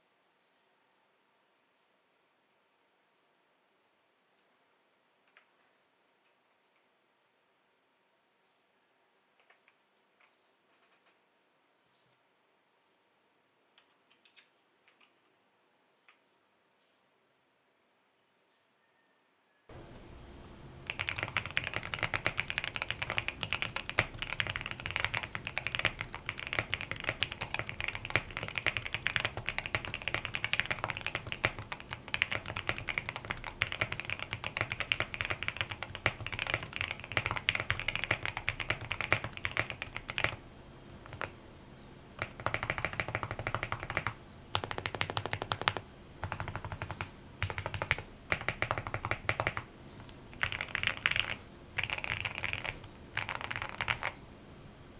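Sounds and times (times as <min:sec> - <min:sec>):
fast typing on mechanical keyboard: 0:20.9 - 0:40.4, 0:41.0 - 0:41.4, 0:42.2 - 0:49.7, 0:50.3 - 0:54.2.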